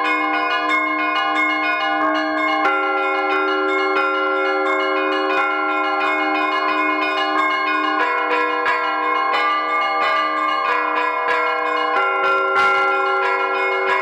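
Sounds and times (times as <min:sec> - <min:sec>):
church bells pealing: 0:00.0 - 0:14.0.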